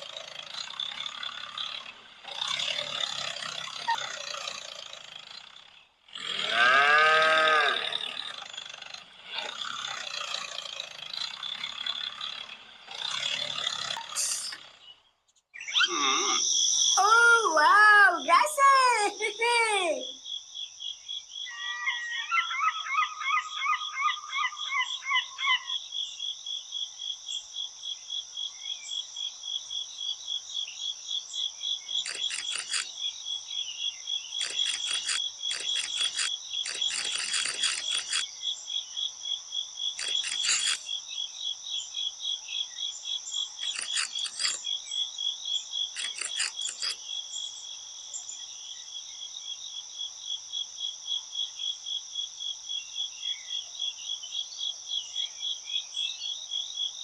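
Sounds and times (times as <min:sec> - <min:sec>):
rapid chirping call: 0:15.6 - 0:17.0, 0:21.5 - 0:25.8, 0:31.9 - 0:33.1, 0:34.3 - 0:38.3, 0:39.9 - 0:41.0, 0:43.4 - 0:45.0, 0:45.8 - 0:47.1
crickets chirping: 0:15.6 - 0:19.4, 0:20.0 - 0:57.0.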